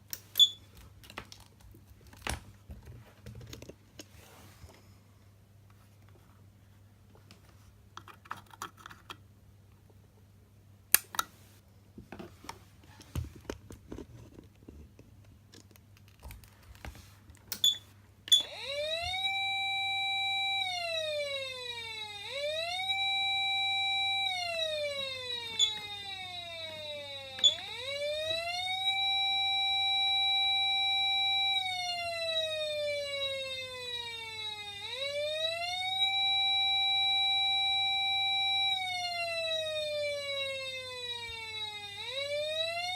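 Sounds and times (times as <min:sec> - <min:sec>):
faint electrical hum: 0:00.0 - 0:42.9
electronic siren rising and falling: 0:18.3 - 0:42.9.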